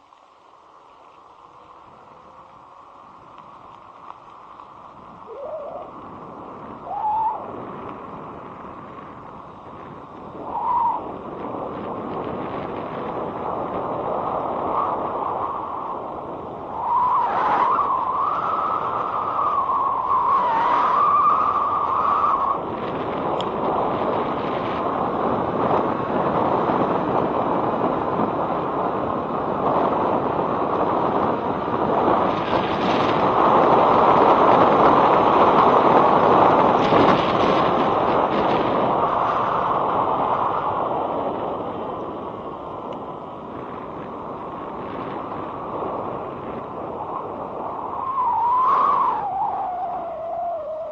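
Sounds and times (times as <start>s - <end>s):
wavering whine: 0.0s - 23.9s, 41.9s - 50.9s
wind and road noise: 0.0s - 50.9s.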